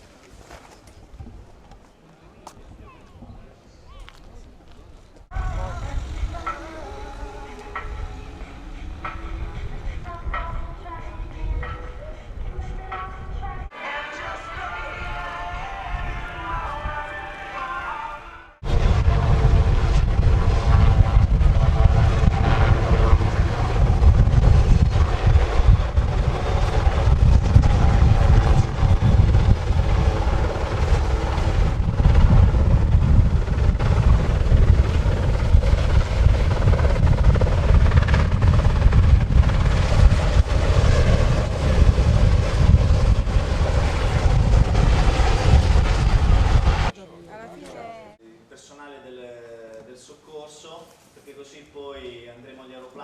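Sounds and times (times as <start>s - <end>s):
wind buffeting microphone: 2.6s - 13.7s, 18.6s - 46.9s.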